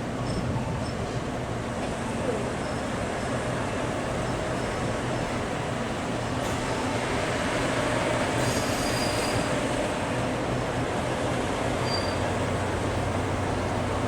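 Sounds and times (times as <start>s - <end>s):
diesel locomotive engine humming: 0.0s - 14.0s
train brakes squealing: 0.2s - 1.3s, 2.3s - 2.9s, 8.2s - 9.9s, 11.7s - 12.6s
train wheels rolling: 6.3s - 14.0s.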